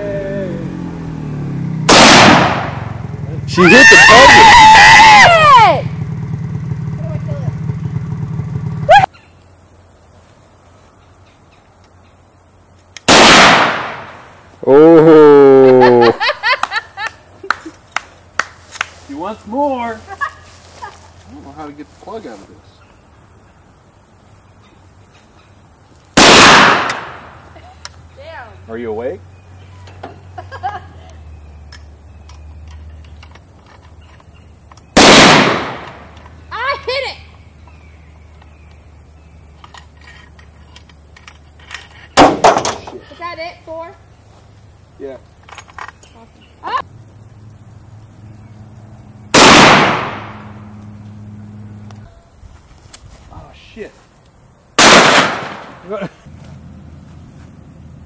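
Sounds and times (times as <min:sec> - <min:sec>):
loud gunshot: 0:01.9 - 0:03.0, 0:13.1 - 0:14.2, 0:26.2 - 0:27.4, 0:35.0 - 0:36.1, 0:42.2 - 0:42.8, 0:49.3 - 0:50.6, 0:54.8 - 0:55.8.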